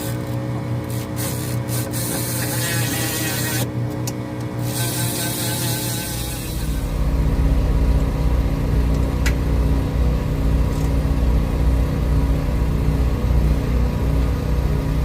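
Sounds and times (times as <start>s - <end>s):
diesel truck engine idling: 6.6s - 15.0s.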